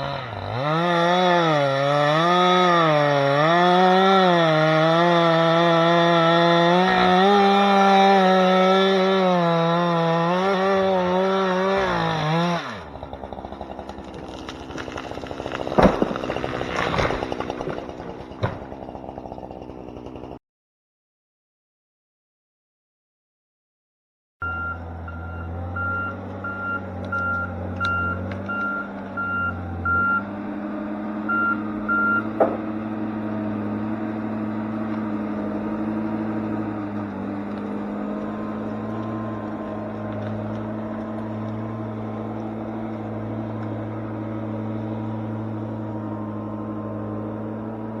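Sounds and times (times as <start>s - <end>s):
diesel engine running: 0.0s - 20.4s, 24.4s - 48.0s
backup alarm beeping: 24.4s - 30.3s, 31.3s - 32.3s.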